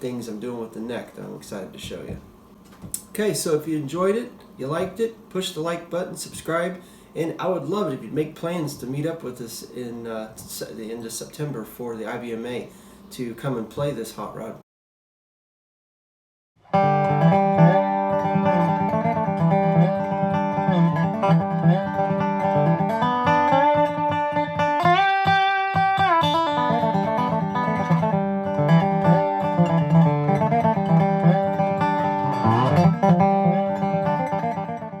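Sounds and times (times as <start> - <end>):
country music with plucked guitars: 16.7 - 35.0.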